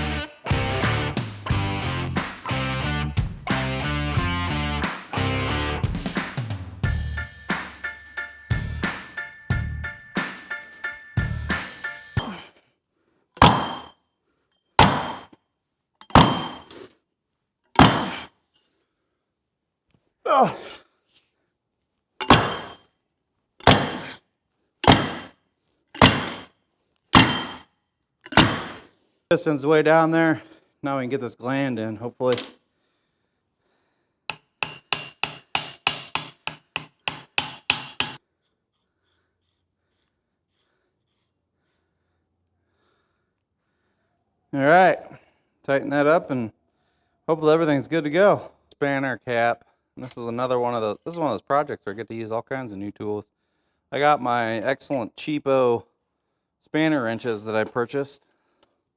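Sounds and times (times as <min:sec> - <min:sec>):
hammer blows with metallic ring: 0:06.2 - 0:12.5, 0:13.4 - 0:14.0, 0:22.2 - 0:22.8, 0:24.8 - 0:25.3, 0:27.2 - 0:27.6.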